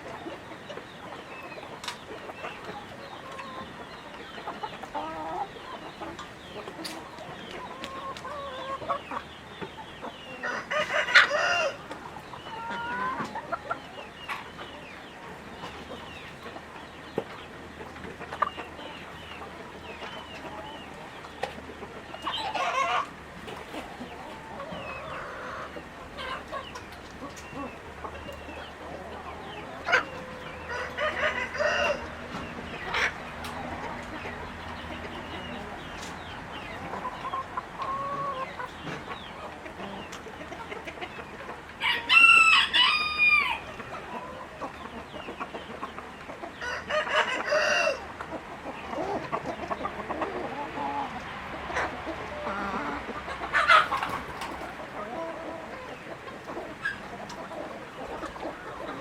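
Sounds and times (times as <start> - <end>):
chickens clucking: 0.0 - 59.0
rooster crowing: 41.8 - 43.6.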